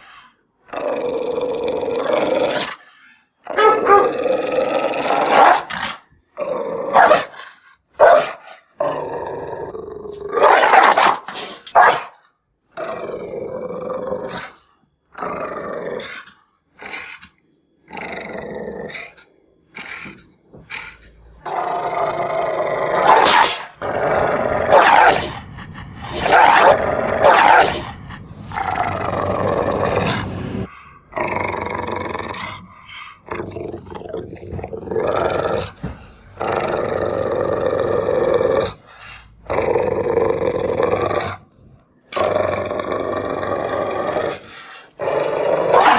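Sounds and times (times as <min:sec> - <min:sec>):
dog growling: 0:00.0 - 0:11.9, 0:12.7 - 0:45.9
dog barking: 0:03.5 - 0:04.2, 0:05.2 - 0:05.9, 0:06.9 - 0:07.4, 0:08.0 - 0:08.6, 0:10.4 - 0:12.2, 0:23.0 - 0:23.7, 0:24.6 - 0:25.3, 0:26.2 - 0:27.8.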